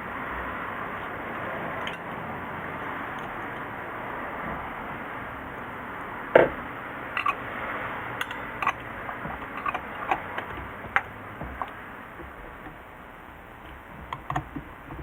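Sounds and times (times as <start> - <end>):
hand tools clicking and knocking: 1.7 - 3.7, 7.2 - 7.5, 8.2 - 15.0.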